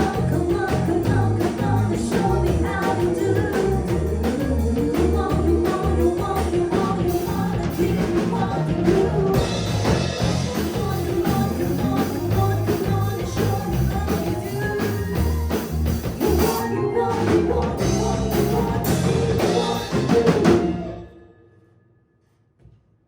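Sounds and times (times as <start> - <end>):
live band playing pop song: 0.0 - 21.1.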